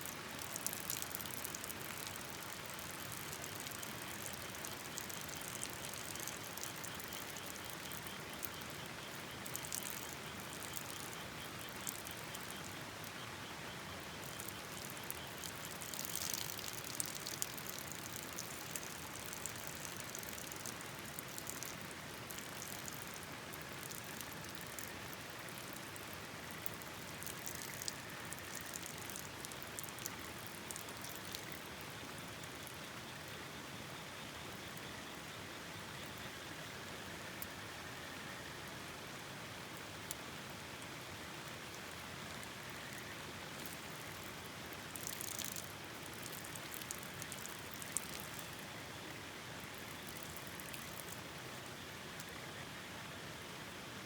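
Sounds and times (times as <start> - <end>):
sharp ticks and pops: 0.4 - 31.8, 42.4 - 48.6.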